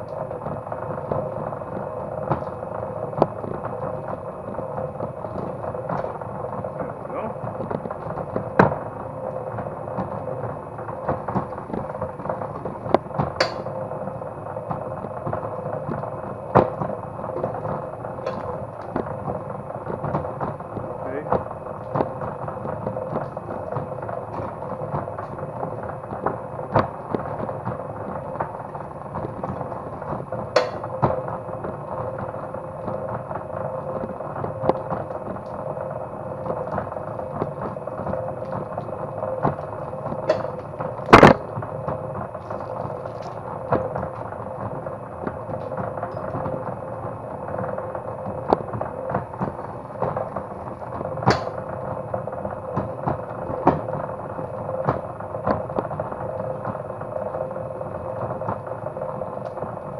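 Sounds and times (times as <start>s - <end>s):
cable stripping machine humming: 0.0s - 59.9s
clicks and knocks: 30.6s - 30.9s, 40.3s - 40.6s.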